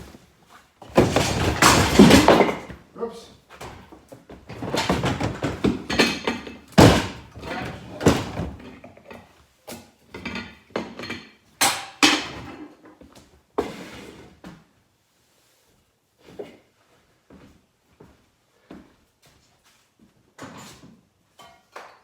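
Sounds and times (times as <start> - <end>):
hard objects knocking and rattling: 0.8 - 2.8, 3.6 - 9.3.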